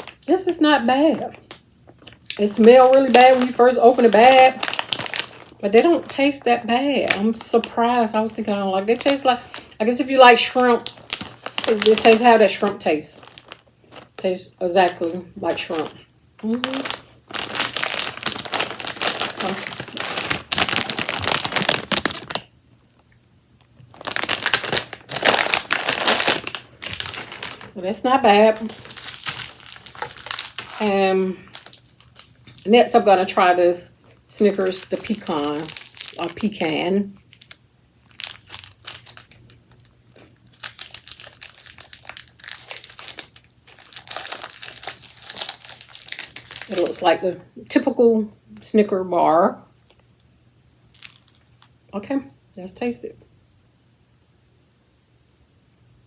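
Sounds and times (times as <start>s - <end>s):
plastic snack bag crinkling: 0.0s - 22.5s, 23.6s - 47.2s, 50.9s - 51.8s.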